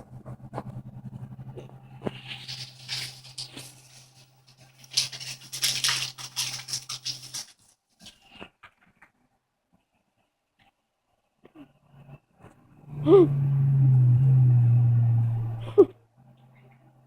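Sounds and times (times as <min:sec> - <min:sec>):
steady low hum: 0:00.0 - 0:05.7, 0:11.6 - 0:17.0
cat scratching and rustling: 0:00.0 - 0:09.0.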